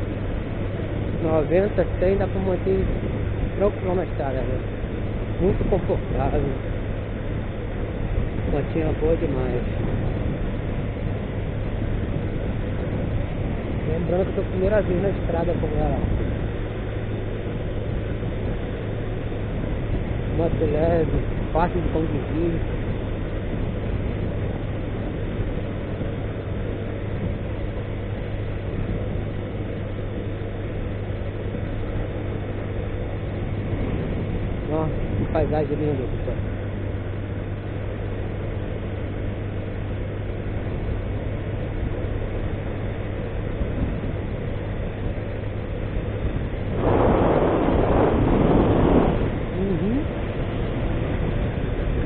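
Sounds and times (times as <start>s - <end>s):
wind noise: 0.0s - 37.4s, 43.3s - 52.0s
motorcycle engine cruising: 0.0s - 52.0s
wind rushing: 46.3s - 52.0s.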